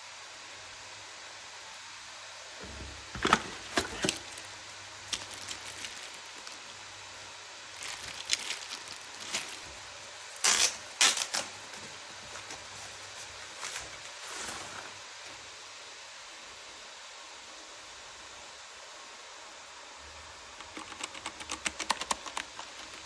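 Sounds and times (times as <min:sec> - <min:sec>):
steady hiss: 0:00.0 - 0:20.6
handling clicks and rustles: 0:02.6 - 0:06.7, 0:07.8 - 0:10.6.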